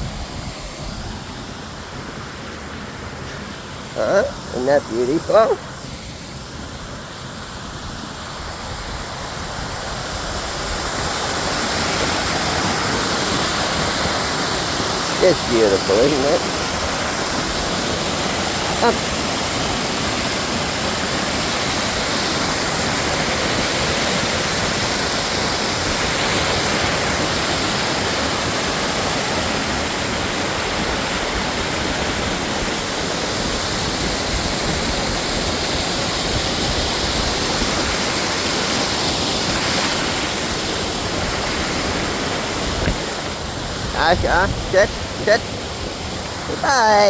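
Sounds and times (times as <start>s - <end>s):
water fountain splashing: 0.0s - 47.0s.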